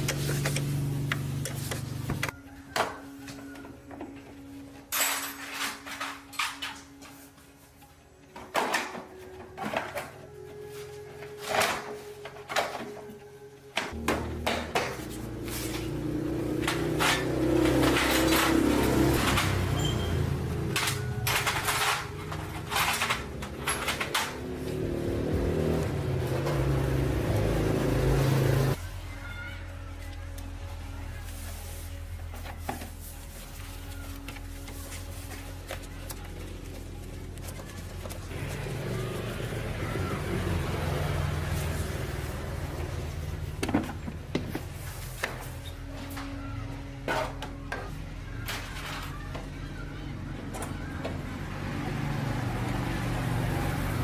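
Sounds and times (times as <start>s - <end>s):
small motorbike engine revving: 15.3s - 20.8s, 23.7s - 28.8s, 38.3s - 43.4s.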